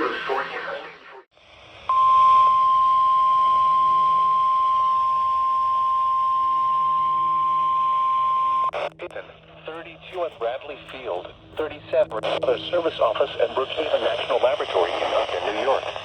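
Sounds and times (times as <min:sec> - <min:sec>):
high-pitched alarm tone: 0:01.9 - 0:08.7
faint radio hiss: 0:08.8 - 0:16.0.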